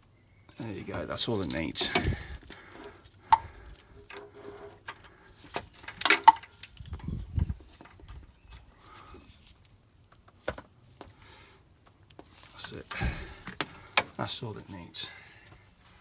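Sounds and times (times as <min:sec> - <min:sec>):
tools and parts clinking: 0:00.5 - 0:07.0.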